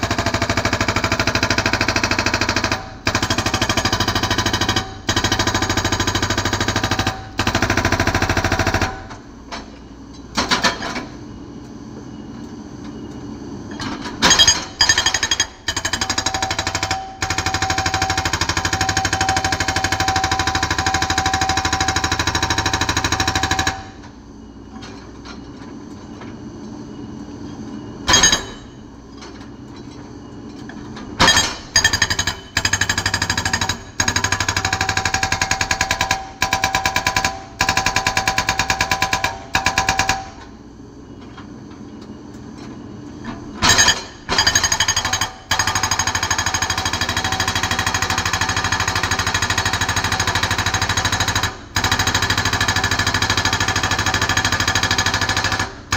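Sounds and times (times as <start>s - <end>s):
hydraulic breaker hammering rock: 0.0s - 9.2s, 28.0s - 28.8s, 31.2s - 40.4s, 43.6s - 55.9s.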